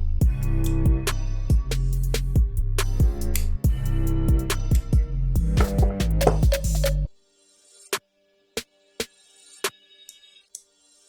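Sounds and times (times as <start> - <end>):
held bass line: 0.0 - 7.1
drum beat: 5.4 - 6.9.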